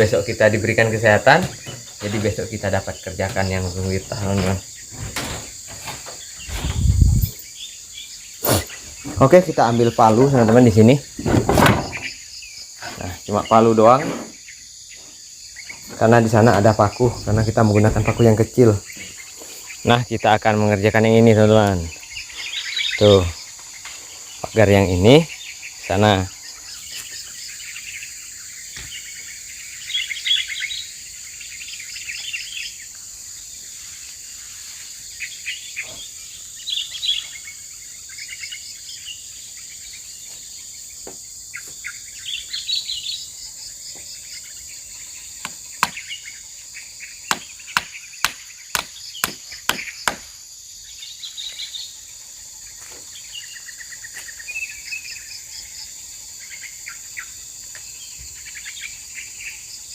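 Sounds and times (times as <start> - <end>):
birds chirping: 0.0 - 59.9
crickets droning: 0.0 - 59.9
hammer striking nail into wood: 45.4 - 46.0, 47.3 - 50.3.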